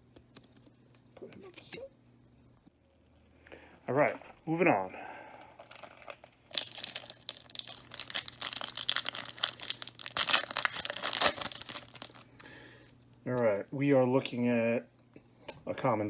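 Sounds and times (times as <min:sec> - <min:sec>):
foil wrapper tearing and crinkling: 0:05.6 - 0:12.3.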